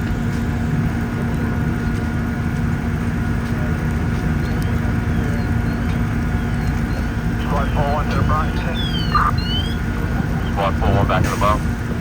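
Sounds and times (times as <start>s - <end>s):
constant hum: 0.0s - 12.0s
diesel engine running: 0.0s - 12.0s.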